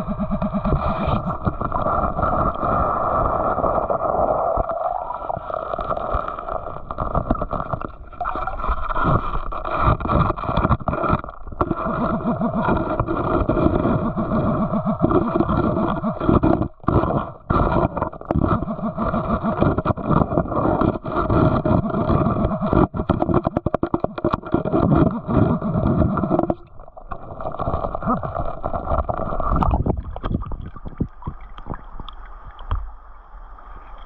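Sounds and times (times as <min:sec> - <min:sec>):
water sloshing and gurgling: 0:00.0 - 0:34.0
knocks and scrapes: 0:05.8 - 0:31.8.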